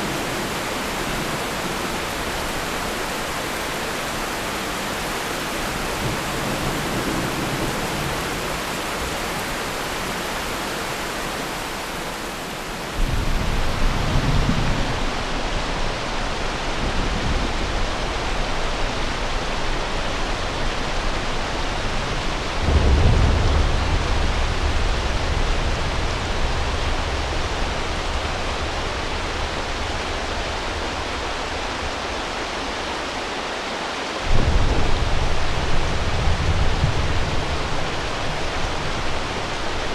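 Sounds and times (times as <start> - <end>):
rain falling: 0.0 - 39.9
thunder rumbling: 5.6 - 18.5, 22.3 - 30.8, 34.2 - 39.9.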